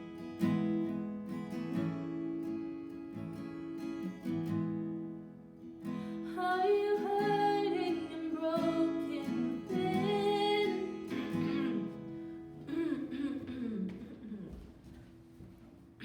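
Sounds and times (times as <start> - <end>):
acoustic guitar chords: 0.0 - 15.0
woman singing: 6.2 - 14.5.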